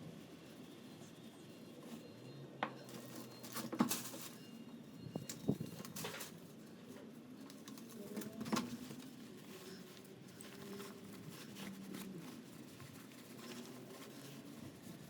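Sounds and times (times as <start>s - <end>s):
small clicks and rustling of parts: 5.2s - 15.0s.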